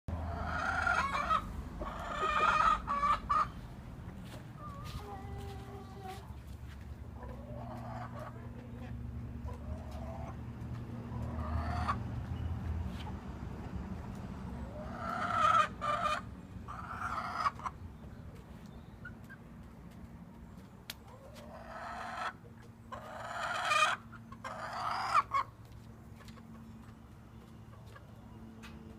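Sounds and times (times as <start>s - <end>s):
chicken calling: 0.1s - 6.4s, 7.1s - 12.0s, 14.6s - 17.8s, 21.0s - 25.6s.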